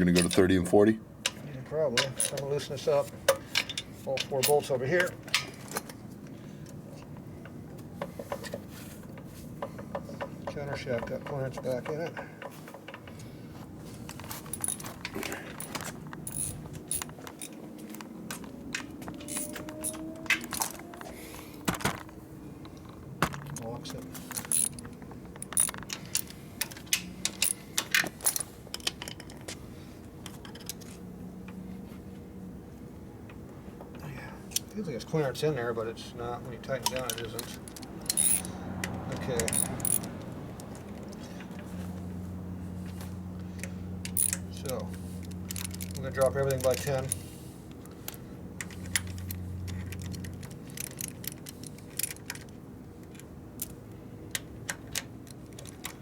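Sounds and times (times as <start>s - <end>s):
metallic clinks of tools and parts: 0.0s - 0.6s, 1.3s - 2.7s, 14.0s - 17.6s, 18.8s - 21.0s, 22.8s - 29.6s, 36.6s - 41.6s, 44.0s - 47.3s, 48.1s - 53.8s.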